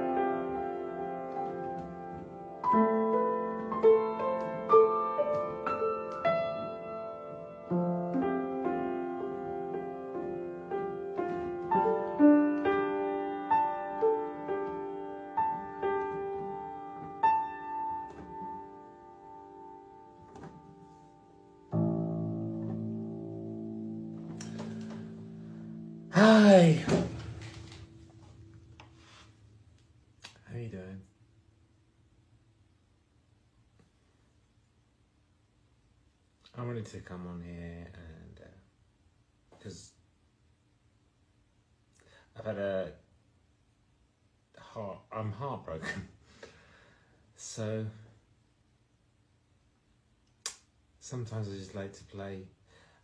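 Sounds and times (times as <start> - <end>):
slow solo piano piece: 0.0 - 29.0.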